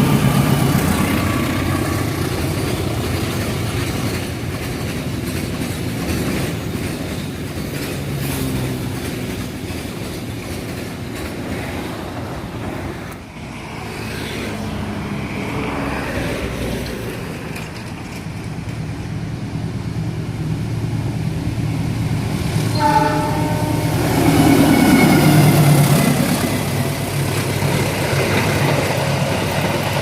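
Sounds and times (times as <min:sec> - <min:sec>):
diesel locomotive running: 0:00.0 - 0:30.0
locomotive horn: 0:22.7 - 0:25.5.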